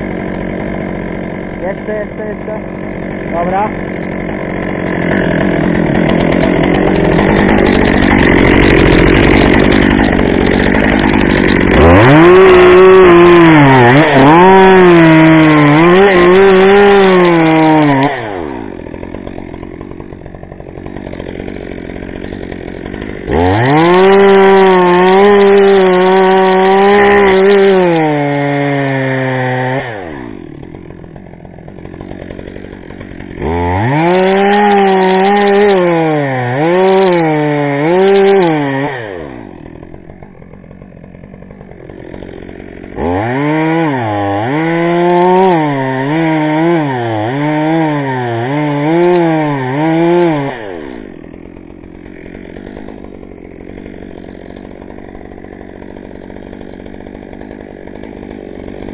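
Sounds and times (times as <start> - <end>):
chainsaw cutting wood: 0.0 - 58.9.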